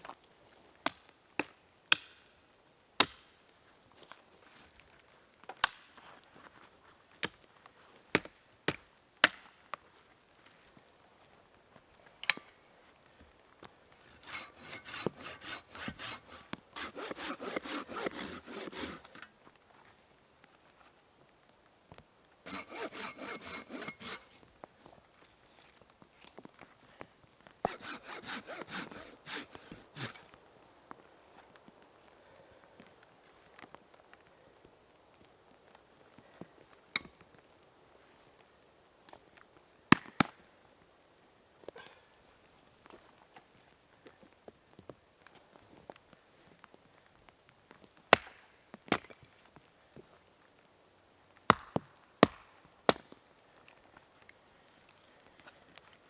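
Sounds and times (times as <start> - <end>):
hand saw cutting wood: 14.0 - 19.3, 22.5 - 24.4, 27.6 - 30.3.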